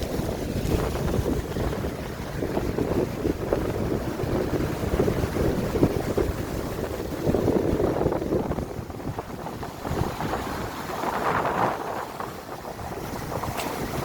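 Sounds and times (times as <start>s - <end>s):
rushing sea water: 0.0s - 14.0s
wind buffeting microphone: 0.0s - 14.0s.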